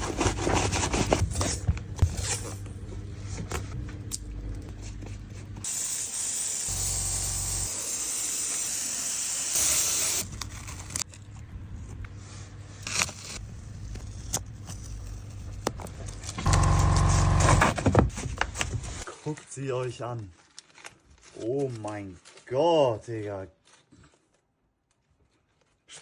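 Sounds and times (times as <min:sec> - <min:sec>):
scraping and rustling handling: 0:00.0 - 0:03.8, 0:18.1 - 0:26.0.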